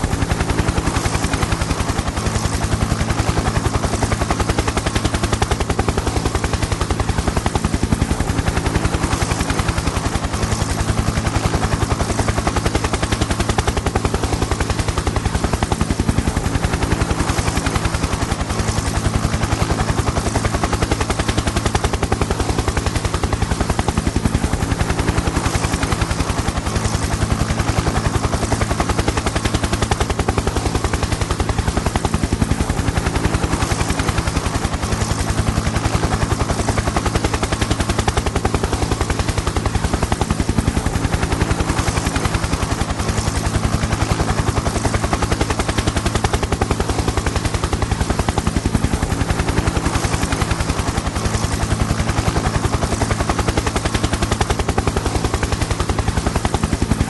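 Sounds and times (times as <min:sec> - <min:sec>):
helicopter rotor blades beating: 0:00.0 - 0:57.0.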